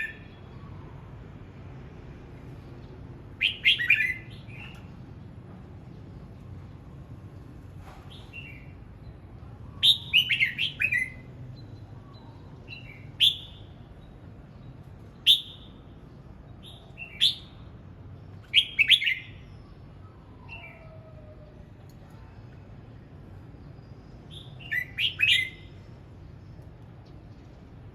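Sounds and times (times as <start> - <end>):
bulbul whistled song: 3.4 - 4.9, 9.7 - 13.8, 15.2 - 15.8, 18.4 - 21.0, 24.3 - 25.8.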